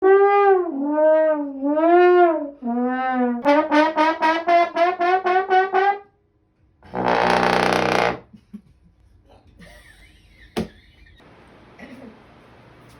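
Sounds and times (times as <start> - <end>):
harsh trombone blast: 0.0 - 6.1, 6.8 - 8.3
trombone sliding notes: 0.0 - 6.1, 6.8 - 8.2
trombone short repeated notes: 3.5 - 6.0.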